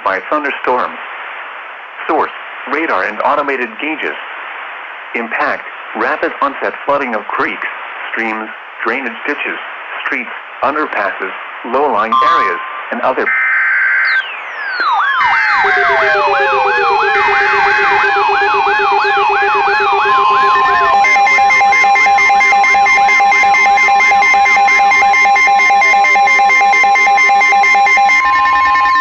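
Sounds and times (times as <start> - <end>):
falling glides and pulsing beeps: 12.1 - 21.4
wailing tone sweeping up and down: 12.1 - 21.4
alert header data bursts: 12.1 - 23.6
steady weather radio alarm tone: 12.1 - 29.0.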